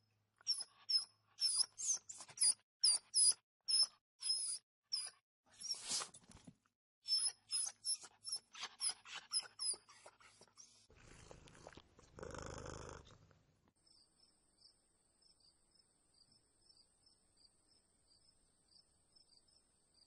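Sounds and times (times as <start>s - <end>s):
cricket chirping: 13.8s - 20.0s.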